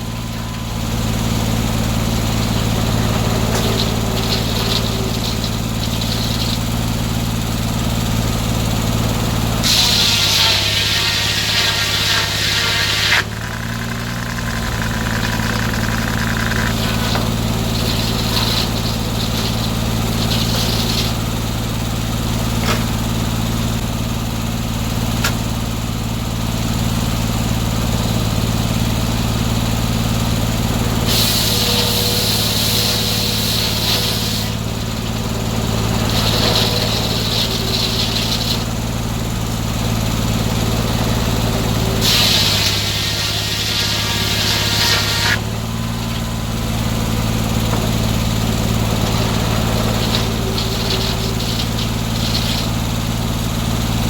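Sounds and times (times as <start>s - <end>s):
sawmill engine running: 0.0s - 54.0s
saw blade hissing through wood: 2.8s - 7.1s, 9.6s - 21.4s, 31.0s - 38.9s, 42.0s - 46.2s, 48.7s - 53.2s.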